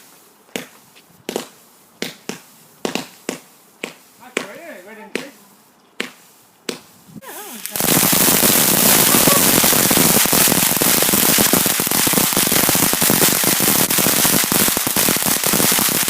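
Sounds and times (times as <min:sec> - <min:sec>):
firework crackling: 0:00.0 - 0:05.4, 0:06.0 - 0:16.0
firework hiss: 0:06.0 - 0:16.0.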